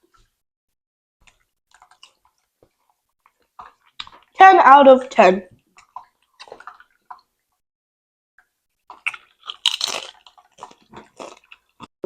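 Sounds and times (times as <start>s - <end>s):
person crunching chips: 8.9s - 11.9s.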